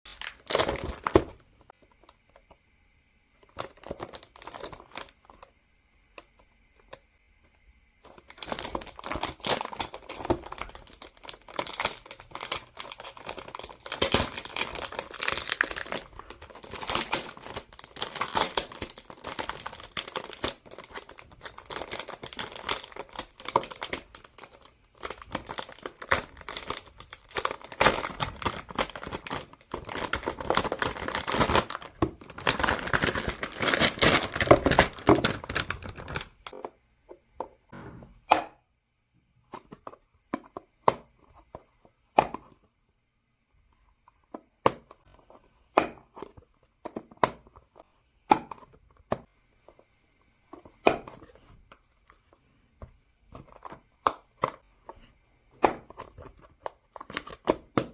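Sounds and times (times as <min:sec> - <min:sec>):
packaging crinkling: 0:00.1 - 0:01.4, 0:03.5 - 0:05.4, 0:08.1 - 0:36.6.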